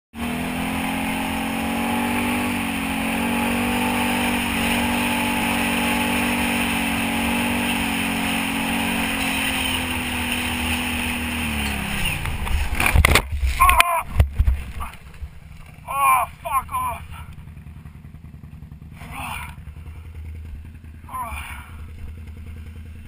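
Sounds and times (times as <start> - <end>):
atv engine running: 0.1 - 23.0.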